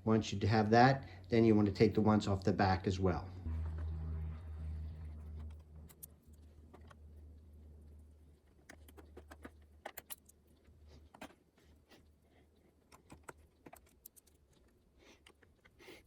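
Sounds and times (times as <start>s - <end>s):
steady low hum: 0.0s - 9.8s.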